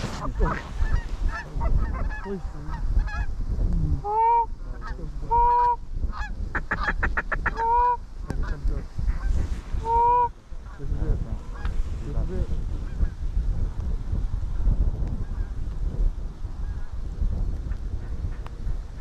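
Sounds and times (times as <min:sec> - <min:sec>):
wind rumble on microphone: 0:00.0 - 0:19.0
goose clucks: 0:00.1 - 0:03.3, 0:04.0 - 0:10.8.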